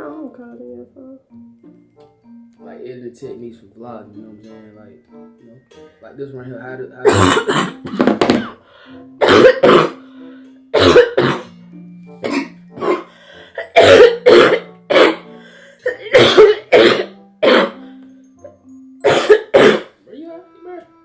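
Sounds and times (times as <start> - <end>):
background music with held notes: 0.0 - 21.0
woman coughing: 7.1 - 8.6, 9.2 - 10.0, 10.8 - 11.5, 12.2 - 15.2, 15.9 - 17.8, 19.0 - 19.9.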